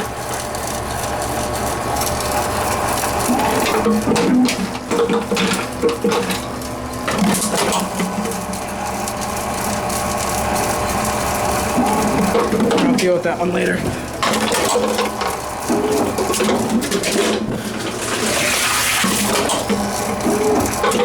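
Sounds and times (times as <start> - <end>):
machine motor humming: 5.8 - 21.0.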